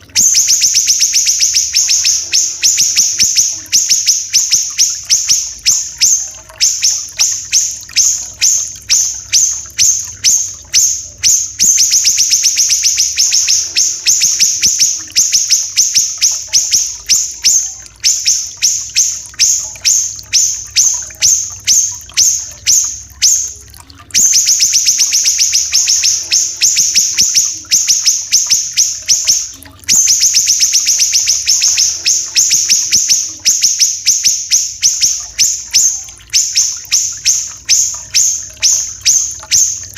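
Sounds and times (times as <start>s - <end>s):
faint trickling water: 0.0s - 39.9s
insect high chirps and trills: 0.0s - 39.9s.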